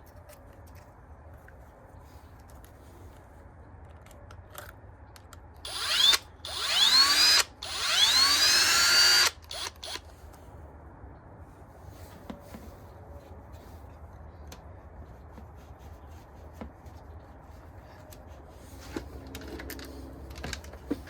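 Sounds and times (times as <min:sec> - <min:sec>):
power drill whining: 0:05.7 - 0:10.1.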